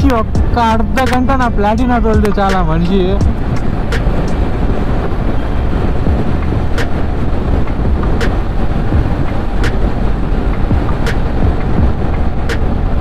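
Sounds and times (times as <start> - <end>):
wind buffeting microphone: 0.0 - 13.0
motorcycle engine: 3.2 - 13.0.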